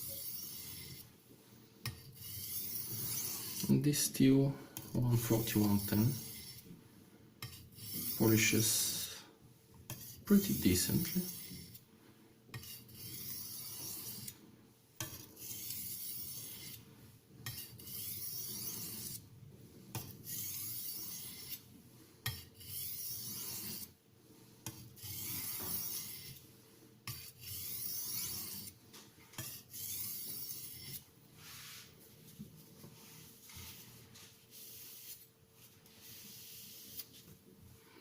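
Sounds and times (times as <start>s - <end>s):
knife scraping on sharpening stone: 0.0s - 1.0s, 1.8s - 3.7s, 4.8s - 6.6s, 7.4s - 8.5s, 9.9s - 11.8s, 12.5s - 14.4s, 15.0s - 16.8s, 17.4s - 19.2s, 20.0s - 21.6s, 22.2s - 23.9s, 24.6s - 26.4s, 27.1s - 28.8s, 29.4s - 31.0s.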